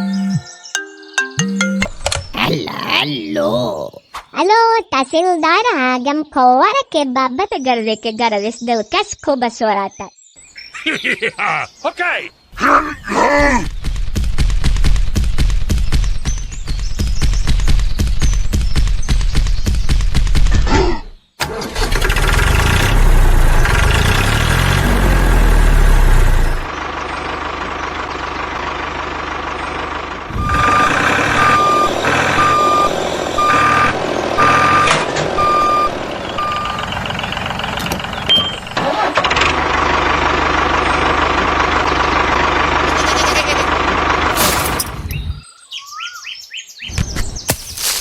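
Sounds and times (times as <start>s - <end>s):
vehicle engine running: 21.8s - 45.4s
reversing beeps: 30.3s - 37.0s.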